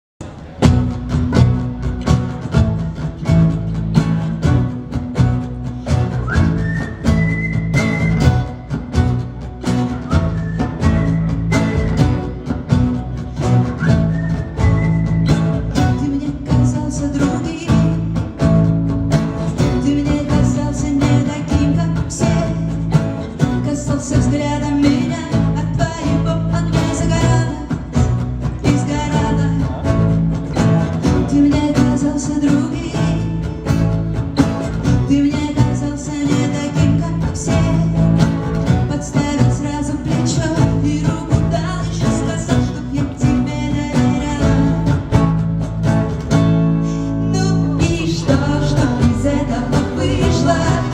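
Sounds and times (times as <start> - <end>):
bass line: 0.2 - 50.9
guitar: 0.2 - 50.9
live pop band: 0.2 - 50.9
lead vocal singing: 13.8 - 18.6, 19.4 - 33.9, 34.6 - 45.4, 46.8 - 50.9.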